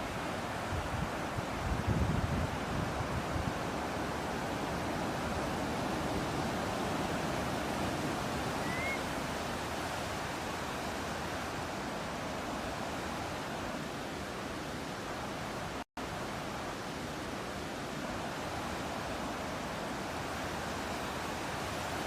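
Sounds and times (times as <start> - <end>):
ocean surf: 0.0 - 22.0
faint bird chirp: 8.5 - 9.1.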